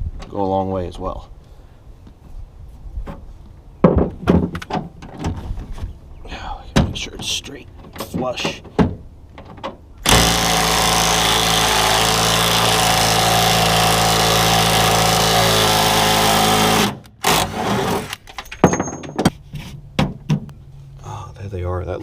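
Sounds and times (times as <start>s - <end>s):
power tool motor running: 10.0s - 18.2s.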